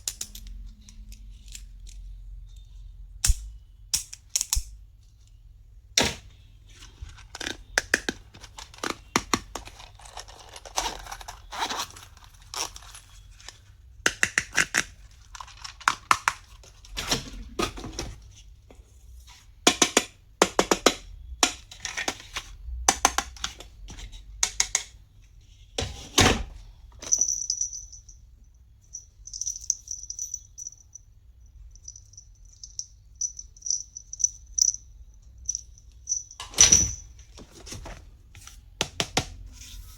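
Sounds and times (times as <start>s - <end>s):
plastic packaging handled: 6.8s - 13.8s.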